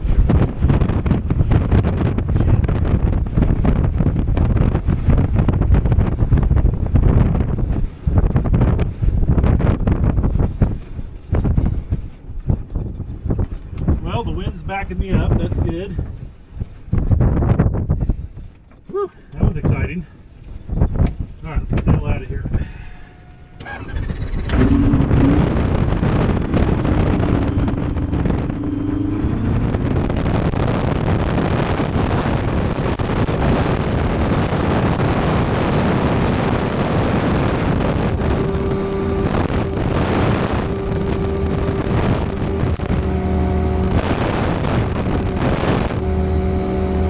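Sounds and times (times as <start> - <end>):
heavy wind rush: 0.0 - 18.6, 19.3 - 47.0
light airplane engine and propeller: 18.3 - 47.0.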